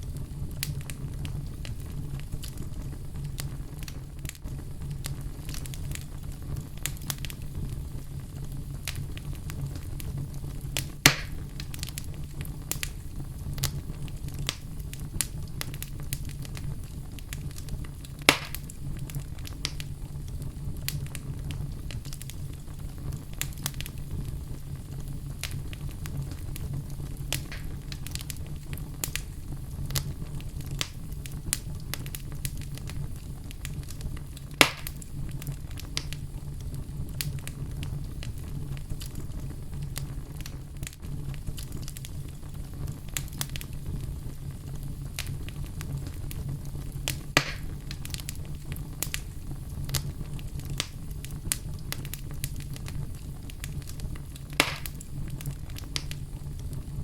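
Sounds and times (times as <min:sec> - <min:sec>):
fire crackling: 0:00.0 - 0:57.0
fire flames rumbling: 0:00.0 - 0:57.0
fire popping: 0:00.0 - 0:57.0.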